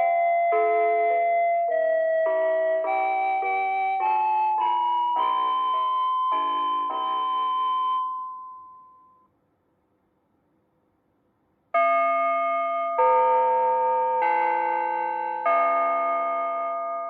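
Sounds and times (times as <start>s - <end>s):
electronic chime through loudspeaker: 0.0s - 9.3s.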